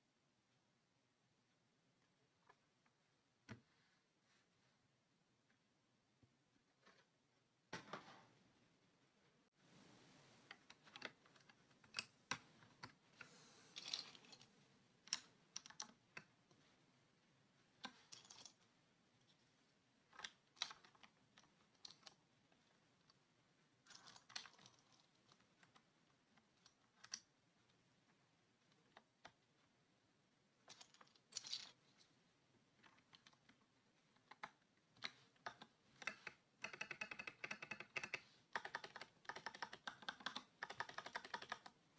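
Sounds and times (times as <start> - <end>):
mechanical keyboard clicking: 35.4 - 41.7.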